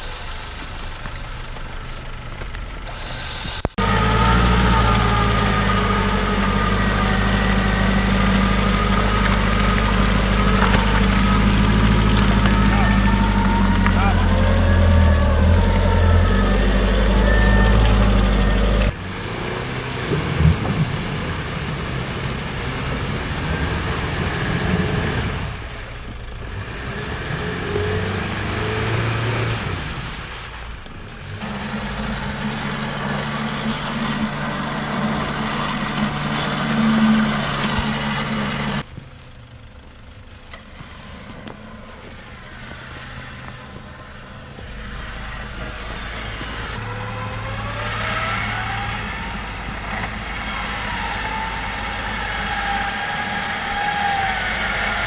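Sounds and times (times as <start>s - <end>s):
off-road vehicle engines running: 0.0s - 55.0s.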